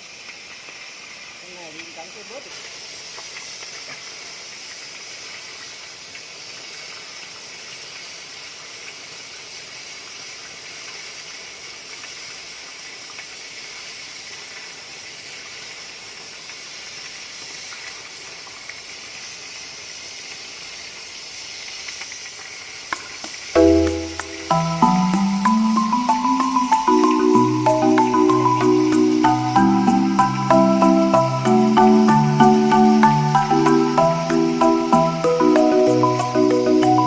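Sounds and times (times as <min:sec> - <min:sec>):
music: 0:23.6 - 0:37.0.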